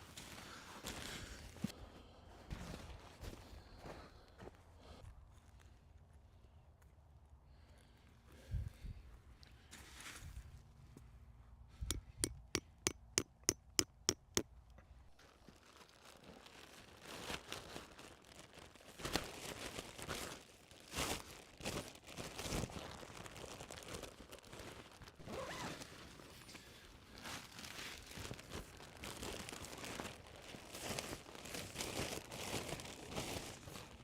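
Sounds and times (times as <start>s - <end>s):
tent fabric rustling: 25.2s - 34.0s.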